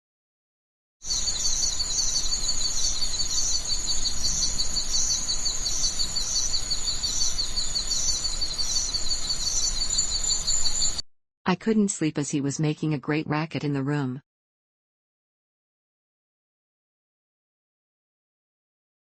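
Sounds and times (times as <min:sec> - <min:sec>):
insects chirping: 0:01.0 - 0:11.0.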